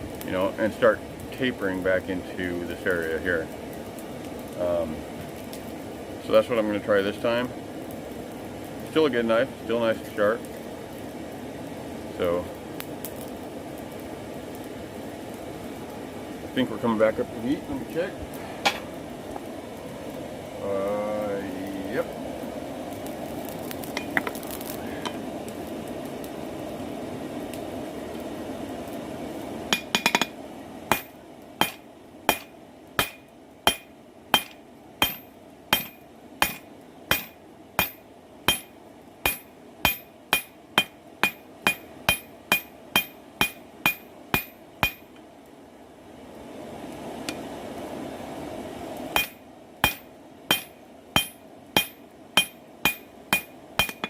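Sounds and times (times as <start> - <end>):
hammer ringing on anvil: 30.9 - 35.2, 35.8 - 38.7, 49.2 - 54.0.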